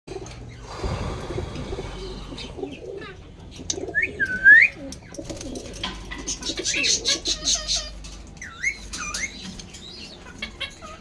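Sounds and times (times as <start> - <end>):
dove-like cooing: 0.1 - 7.8.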